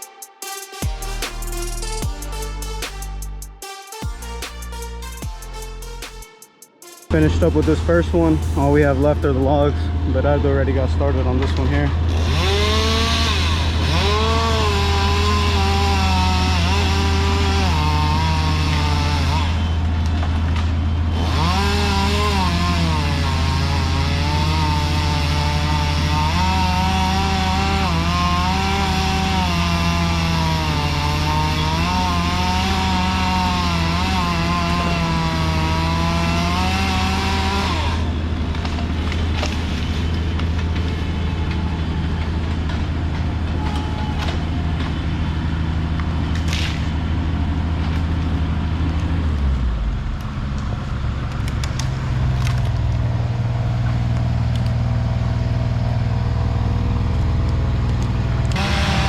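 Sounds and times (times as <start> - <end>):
chainsaw cutting log: 11.4 - 41.6, 46.2 - 47.1, 55.7 - 59.0.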